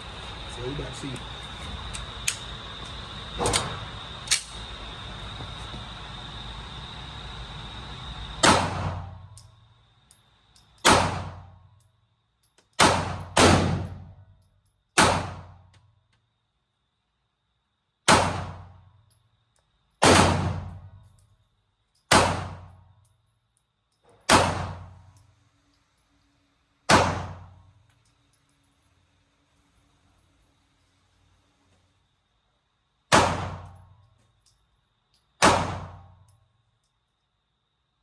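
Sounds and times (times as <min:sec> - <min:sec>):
pistol shots echoing: 0:12.8 - 0:13.9, 0:33.1 - 0:33.7.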